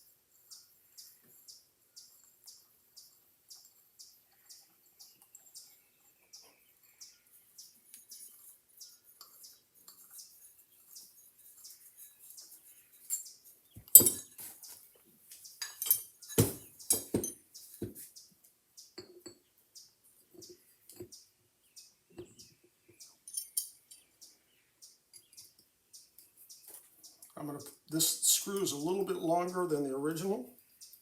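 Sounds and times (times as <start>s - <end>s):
small metal tools clinking: 3.5s - 6.2s, 7.9s - 17.9s, 23.2s - 24.1s.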